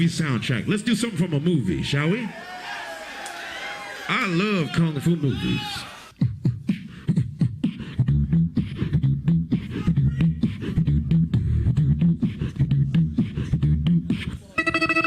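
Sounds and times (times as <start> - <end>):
person beatboxing: 6.2 - 14.6
hummed bass line: 8.0 - 15.0.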